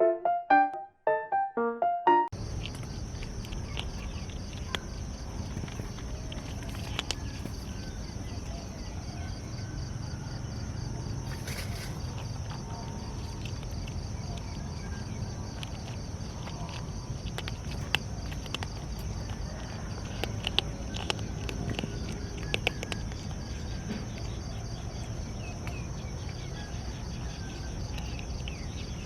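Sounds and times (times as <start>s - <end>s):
cat chewing: 2.4s - 8.6s, 12.2s - 29.0s.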